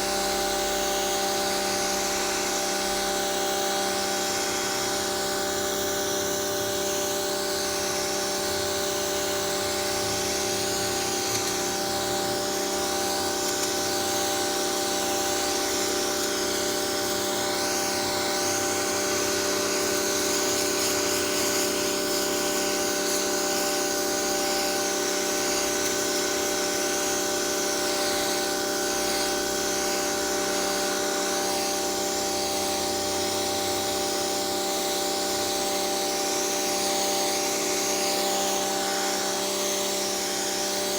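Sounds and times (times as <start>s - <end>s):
pressure washer motor whining: 0.0s - 40.9s
water jet hissing: 1.4s - 30.4s.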